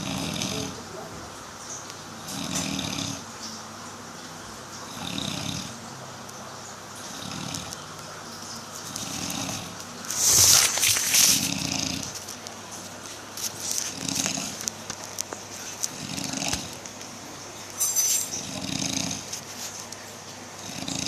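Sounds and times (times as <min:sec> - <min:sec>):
low rasping snore: 0:00.0 - 0:00.8, 0:02.2 - 0:03.3, 0:04.9 - 0:05.8, 0:07.1 - 0:07.8, 0:08.9 - 0:10.6, 0:11.2 - 0:12.2, 0:13.9 - 0:14.6, 0:15.8 - 0:16.8, 0:18.3 - 0:19.3, 0:20.6 - 0:21.0.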